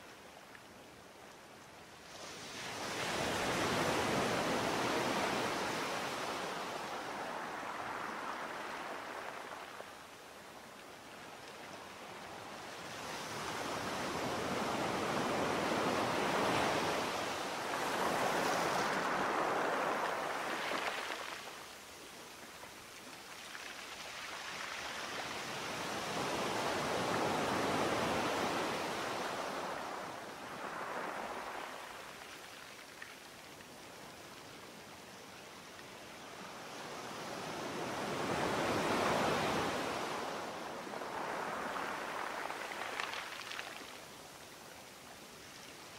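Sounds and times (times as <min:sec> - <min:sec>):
sea waves surging: 0:13.2 - 0:21.9, 0:37.4 - 0:44.3.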